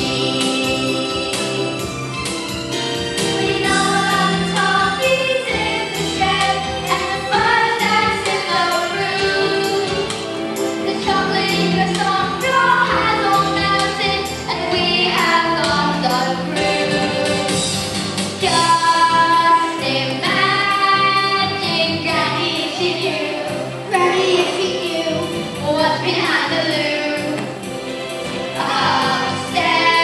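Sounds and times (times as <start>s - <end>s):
children singing: 0.0s - 1.8s, 3.2s - 17.7s, 18.4s - 27.6s, 28.4s - 30.0s
instrumental music with steady beat: 0.0s - 20.7s.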